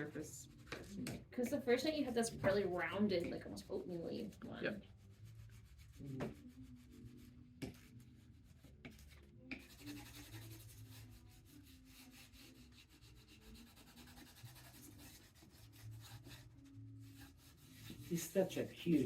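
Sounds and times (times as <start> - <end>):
wooden spoon rubbing over paper: 1.7 - 19.0.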